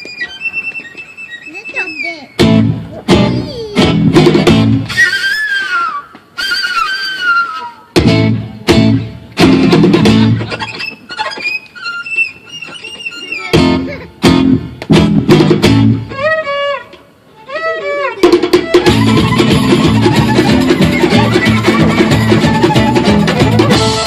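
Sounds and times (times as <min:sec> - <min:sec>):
sliding guitar melody: 0:00.0 - 0:05.3, 0:07.9 - 0:24.0
guitar strummed chords: 0:02.4 - 0:04.9, 0:08.0 - 0:10.5, 0:13.6 - 0:16.2, 0:18.8 - 0:24.0.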